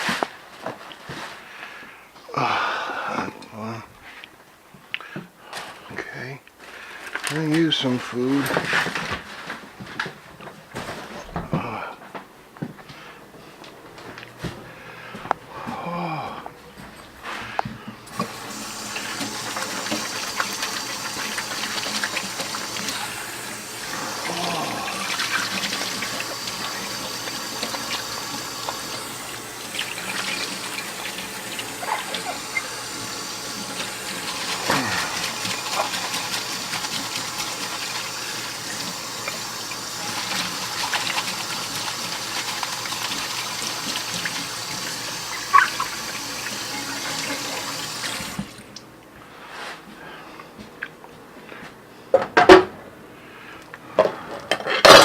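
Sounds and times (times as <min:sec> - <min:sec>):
tap water running into sink: 0:18.0 - 0:48.9.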